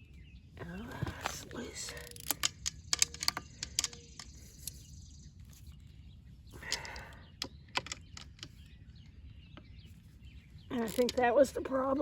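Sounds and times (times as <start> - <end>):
tool clicking on metal fittings: 1.9 - 4.8.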